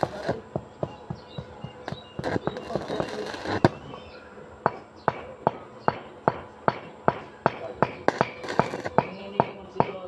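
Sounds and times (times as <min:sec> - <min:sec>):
dense crackling: 0:00.0 - 0:00.4, 0:02.2 - 0:03.9, 0:08.0 - 0:09.0.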